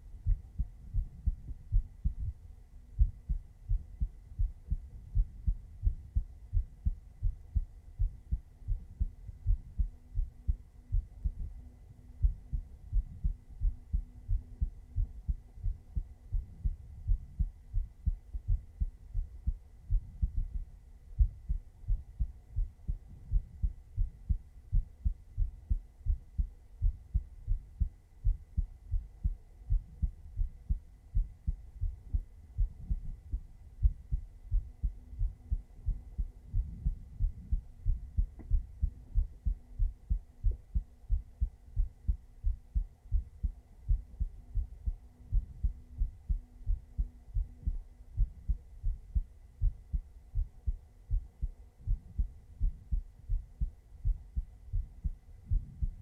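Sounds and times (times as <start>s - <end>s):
heartbeat thumps: 0.0s - 56.0s.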